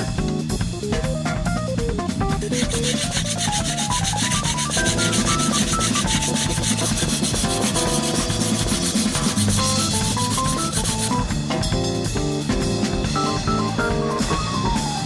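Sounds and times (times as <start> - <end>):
knife scraping on whetstone: 2.5 - 11.2.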